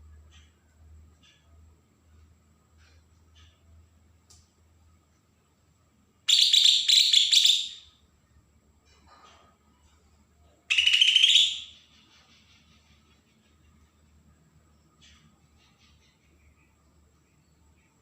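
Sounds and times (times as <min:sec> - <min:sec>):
bird giving harsh rapid call: 0:06.3 - 0:07.9, 0:10.7 - 0:13.1.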